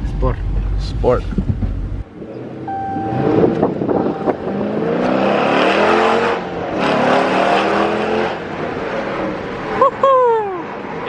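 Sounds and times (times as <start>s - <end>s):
car engine accelerating hard: 0.0s - 9.7s.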